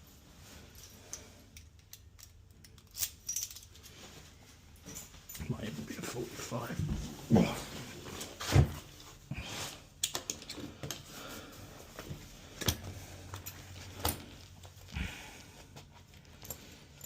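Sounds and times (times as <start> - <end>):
lock cylinders and keys clicking: 0.8 - 3.8.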